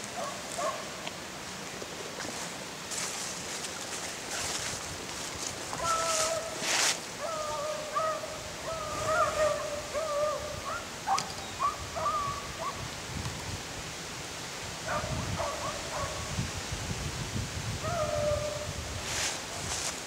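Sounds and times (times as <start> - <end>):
wind rumble on microphone: 4.0 - 20.0.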